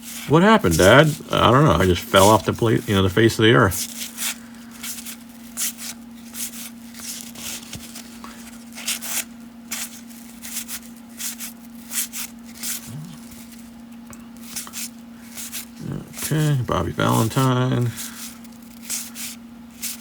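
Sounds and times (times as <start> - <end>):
cellophane wrapper crinkling: 3.8 - 16.5
low hum: 15.1 - 18.1.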